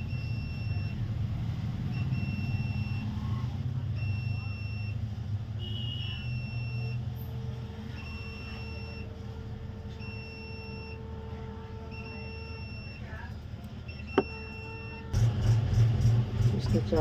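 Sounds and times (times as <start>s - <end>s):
electronic buzzer beeping: 2.0s - 3.1s, 5.6s - 7.0s, 7.9s - 9.1s, 10.0s - 11.1s, 11.9s - 13.1s, 13.9s - 15.2s.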